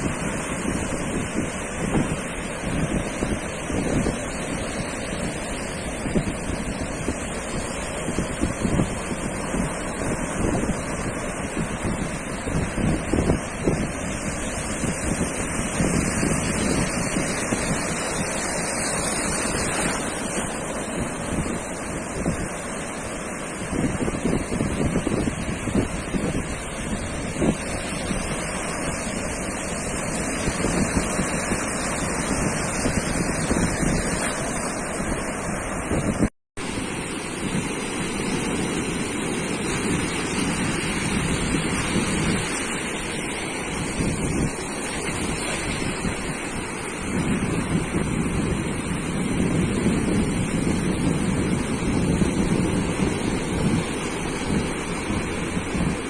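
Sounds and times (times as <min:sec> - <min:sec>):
ocean surf on a beach: 0:00.0 - 0:56.0
wind buffeting microphone: 0:00.0 - 0:56.0.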